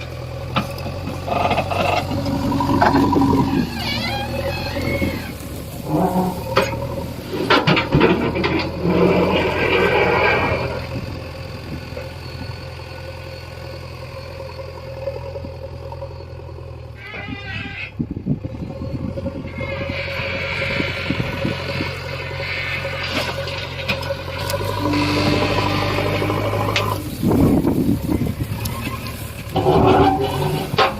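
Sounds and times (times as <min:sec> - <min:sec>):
diesel engine running: 0:00.0 - 0:30.9
high wavering squeal: 0:01.2 - 0:30.9
metal clanks and knocks: 0:05.9 - 0:10.7, 0:29.4 - 0:30.9.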